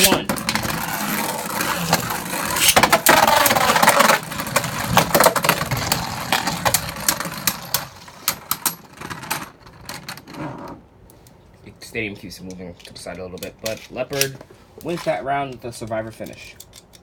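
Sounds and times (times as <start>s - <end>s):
spinning tops whirring and clashing: 0.0s - 8.8s.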